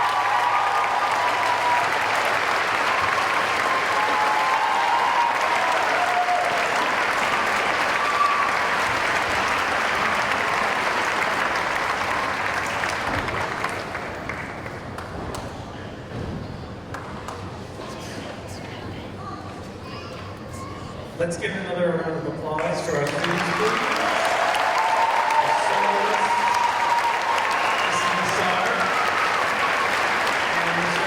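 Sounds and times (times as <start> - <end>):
audience applauding: 0.0 - 15.1, 22.6 - 31.0.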